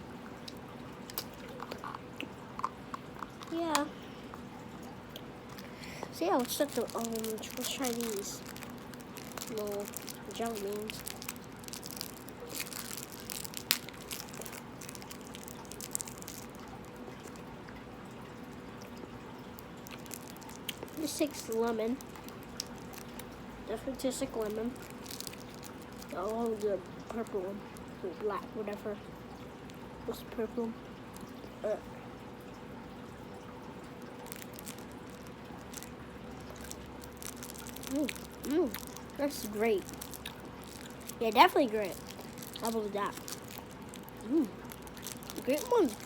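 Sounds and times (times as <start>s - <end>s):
faint steady hum: 0.0s - 46.0s
clicks and crackles of eating candy: 0.2s - 31.9s, 33.3s - 46.0s
wet mouth clicks of chewing: 0.4s - 4.5s, 19.9s - 21.0s, 39.9s - 41.2s.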